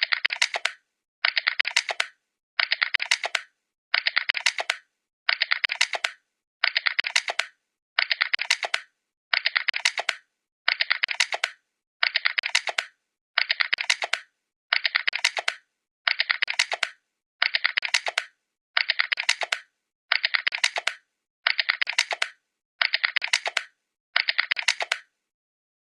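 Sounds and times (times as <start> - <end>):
keyboard typing: 0.0 - 25.2.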